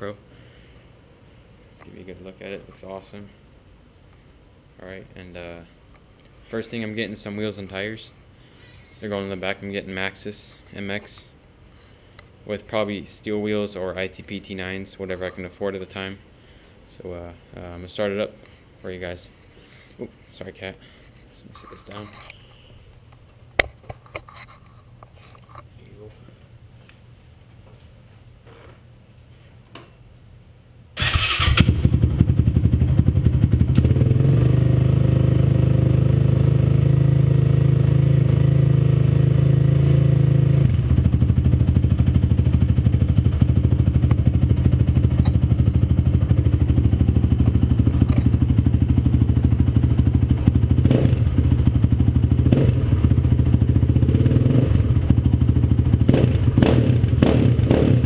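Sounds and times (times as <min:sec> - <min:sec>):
engine starting and idling: 0:31.0 - 0:32.6.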